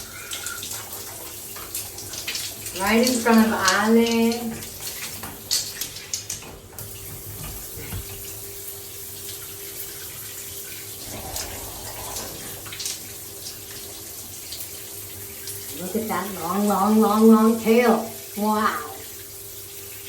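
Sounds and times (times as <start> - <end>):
shower water running: 0.0 - 20.0.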